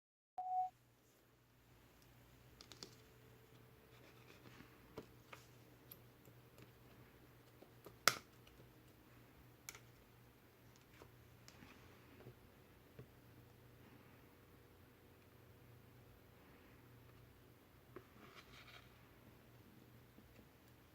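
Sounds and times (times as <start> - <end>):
short beep: 0.4 - 0.7
low steady hum: 0.4 - 20.9.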